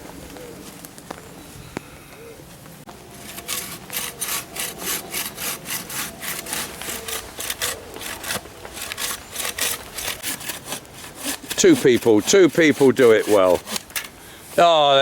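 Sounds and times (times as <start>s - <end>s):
hand saw cutting wood: 3.1s - 14.1s.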